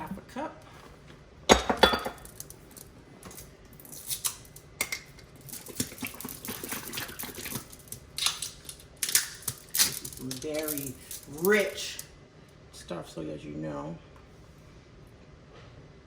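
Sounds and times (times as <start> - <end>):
cream being poured: 5.4 - 8.8.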